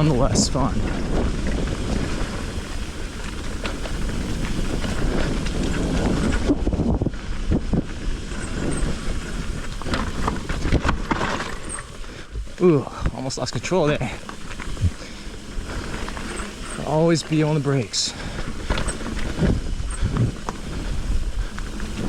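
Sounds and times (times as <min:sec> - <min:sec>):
bike frame rattling: 0:00.0 - 0:22.0
bike tyres crunching over rock: 0:00.0 - 0:22.0.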